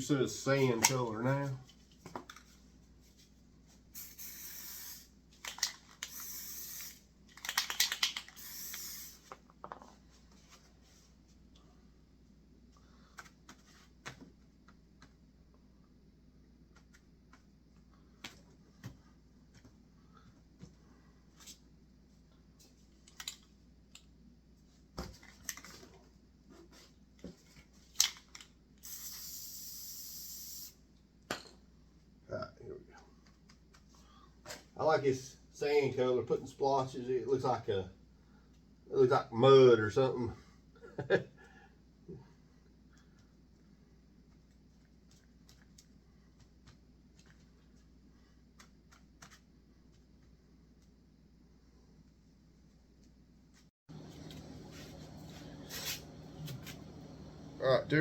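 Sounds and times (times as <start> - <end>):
spray paint hissing: 4.0 - 5.1, 6.1 - 7.0, 8.3 - 9.3, 28.8 - 30.8
spray can clicks and rattles: 4.0 - 9.3, 28.0 - 30.7.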